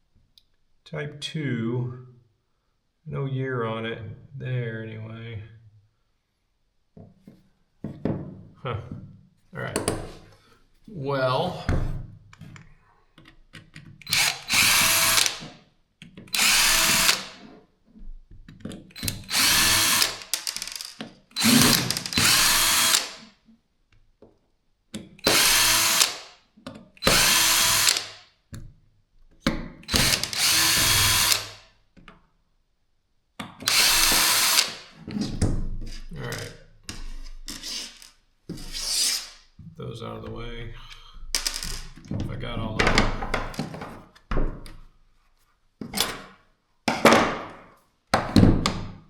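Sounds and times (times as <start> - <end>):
power drill bursts: 14.0 - 15.4, 16.3 - 17.4, 19.0 - 23.2, 25.2 - 26.3, 27.0 - 28.2, 29.9 - 31.6, 33.7 - 34.9.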